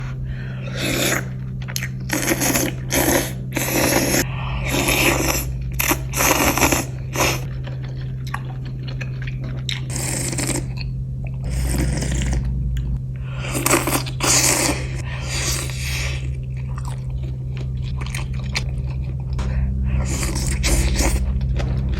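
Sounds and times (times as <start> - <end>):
steady low hum: 0.0 - 21.9
chewing and crunching noodles: 0.6 - 21.9.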